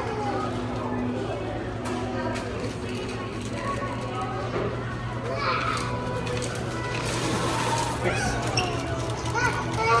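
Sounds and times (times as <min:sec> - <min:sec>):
crowd hubbub in a shop: 0:00.0 - 0:10.0.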